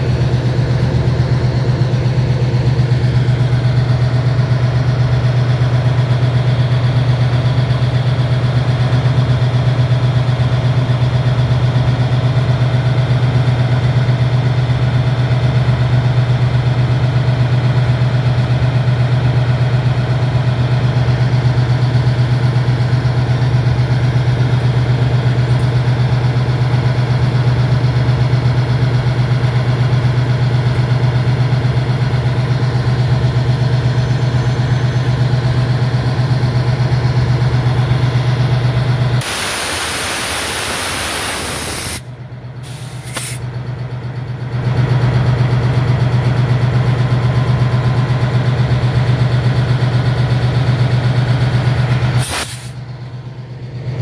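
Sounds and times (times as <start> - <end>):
diesel engine idling: 0.0 - 54.0
loud rushing noise: 39.2 - 42.0.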